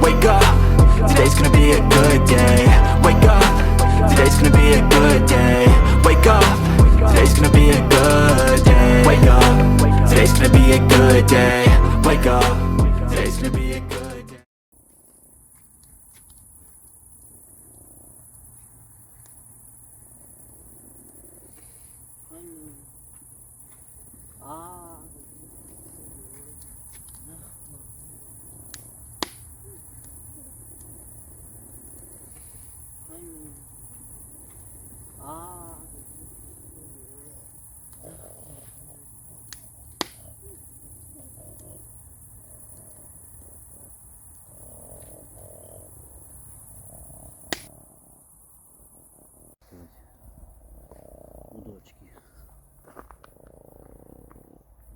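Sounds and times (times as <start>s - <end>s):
crickets chirping: 0.0s - 12.5s, 14.8s - 54.9s
sharp clicks: 28.7s - 30.2s, 39.4s - 40.2s.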